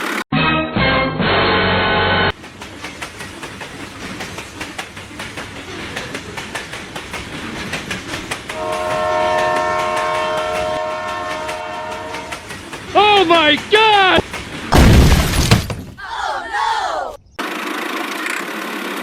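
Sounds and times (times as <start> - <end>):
train wheels clacking on rails: 2.3 - 14.7
train horn: 8.6 - 12.5.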